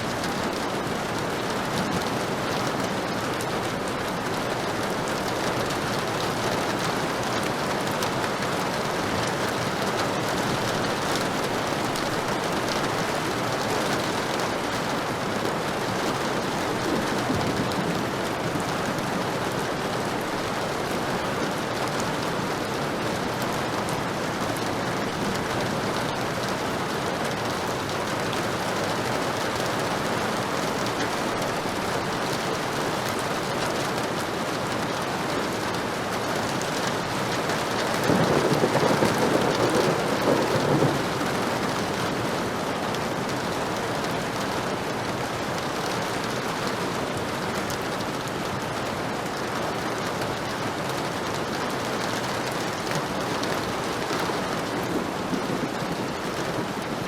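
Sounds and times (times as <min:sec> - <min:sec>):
heavy rain: 0:00.0 - 0:57.0
thunder rolling: 0:38.0 - 0:42.0, 0:54.6 - 0:57.0.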